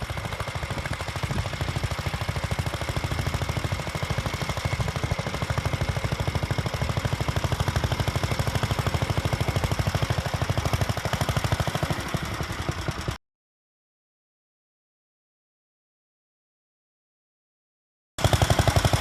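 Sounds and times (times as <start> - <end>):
tractor engine running: 0.0 - 13.2, 18.2 - 19.0.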